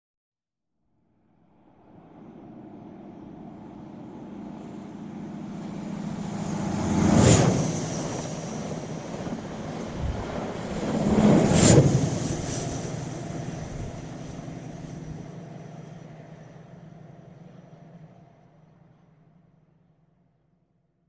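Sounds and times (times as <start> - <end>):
train passing under bridge: 1.6 - 17.6.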